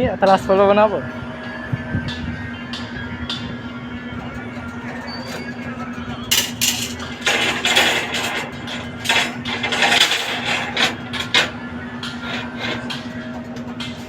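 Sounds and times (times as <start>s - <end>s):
steady low hum: 0.0s - 14.0s
knocks and clanks: 4.2s - 14.0s
scraping: 6.3s - 13.2s.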